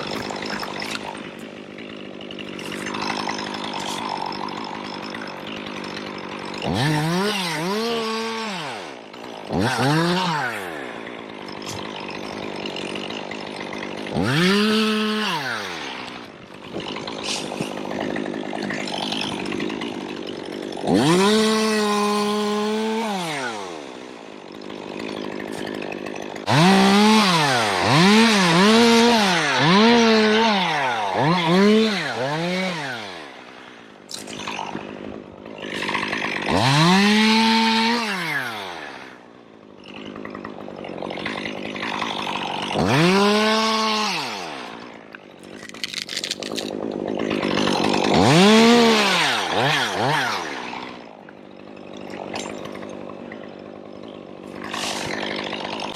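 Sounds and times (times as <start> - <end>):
chainsaw revving: 0.0 - 55.9.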